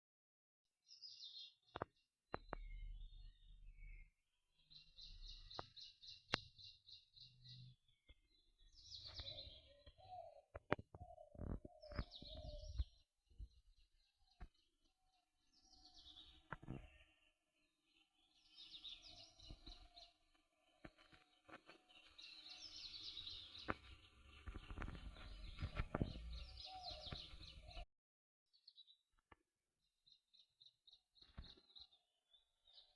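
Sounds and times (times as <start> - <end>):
small birds chirping: 0.9 - 27.9, 30.0 - 32.9
songbird trilling: 24.7 - 27.8.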